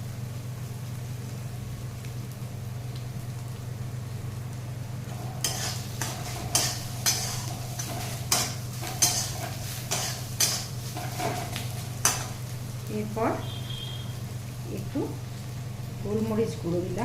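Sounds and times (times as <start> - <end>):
low steady hum: 0.0 - 17.0
spatula scraping a frying pan: 5.1 - 12.5.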